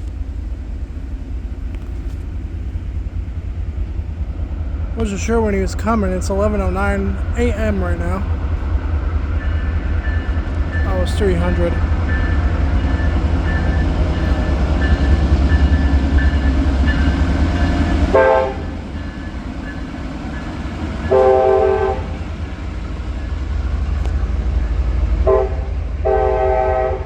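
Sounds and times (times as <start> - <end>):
diesel locomotive engine rumbling: 0.0 - 27.0
air horn blasts: 18.1 - 18.8, 21.1 - 22.2, 25.2 - 27.0.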